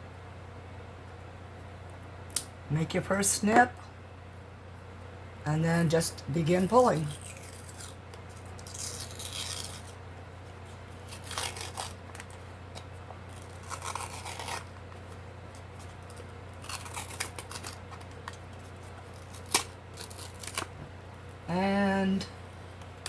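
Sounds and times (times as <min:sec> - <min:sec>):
steady low hum: 0:00.0 - 0:23.0
scissors snipping: 0:16.1 - 0:18.4.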